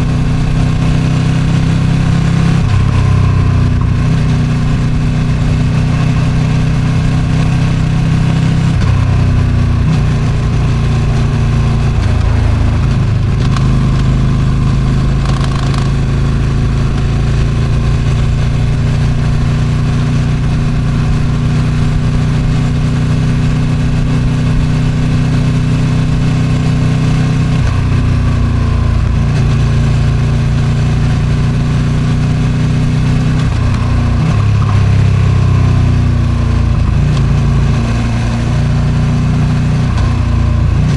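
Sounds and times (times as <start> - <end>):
wind noise: 0.0 - 25.4
motorcycle engine cruising: 0.0 - 40.9.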